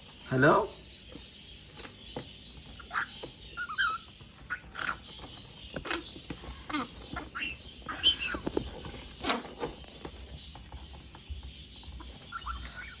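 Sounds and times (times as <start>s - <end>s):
parrot chick squeaky calls: 2.6s - 10.0s, 11.8s - 13.0s.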